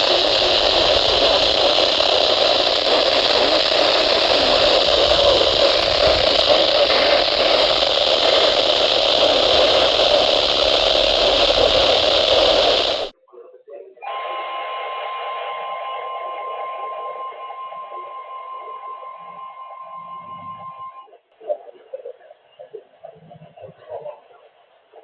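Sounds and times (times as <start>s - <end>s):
radio static hiss: 0.0s - 13.1s.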